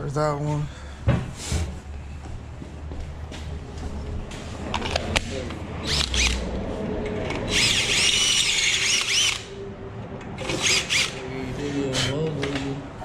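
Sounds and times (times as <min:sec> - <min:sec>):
cordless drill whining: 0:05.8 - 0:06.4, 0:07.5 - 0:09.5, 0:10.4 - 0:11.3.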